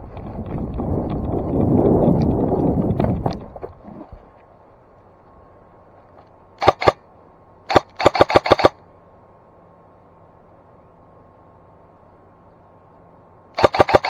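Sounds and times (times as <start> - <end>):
airsoft gun shots: 6.6 - 7.0, 7.7 - 8.8, 13.6 - 14.0.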